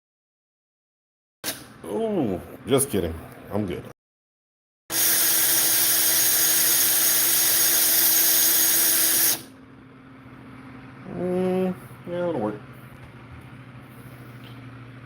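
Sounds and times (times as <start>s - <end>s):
handheld power tool running: 4.9s - 9.5s.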